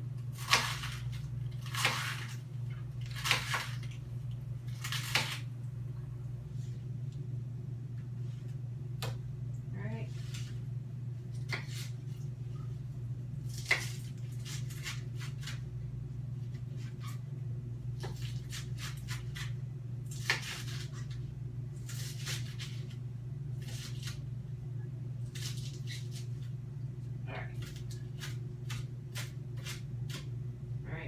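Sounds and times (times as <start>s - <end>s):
knife slicing lettuce: 0.3s - 2.4s, 3.0s - 4.0s, 4.6s - 5.5s, 11.3s - 12.2s, 13.4s - 15.7s, 18.0s - 23.0s, 23.6s - 24.3s, 25.2s - 26.6s, 27.5s - 30.3s.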